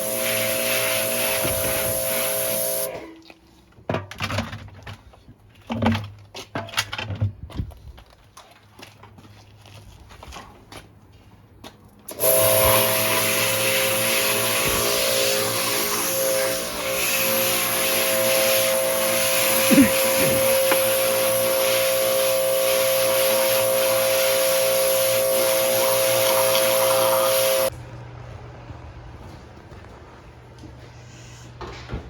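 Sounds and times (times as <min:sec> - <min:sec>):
electric motor whining: 0:00.0 - 0:03.1, 0:12.1 - 0:27.7
parts knocking and clattering: 0:03.8 - 0:07.8
spraying hiss: 0:12.1 - 0:27.7.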